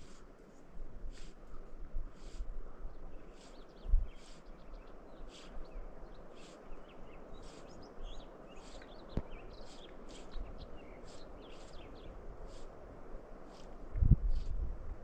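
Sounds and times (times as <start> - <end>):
small birds chirping: 0.0 - 14.7.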